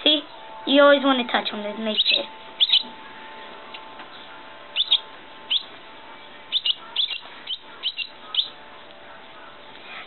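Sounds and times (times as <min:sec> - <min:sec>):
baby bird chirping: 0:01.8 - 0:03.0, 0:04.1 - 0:05.8, 0:06.4 - 0:08.6.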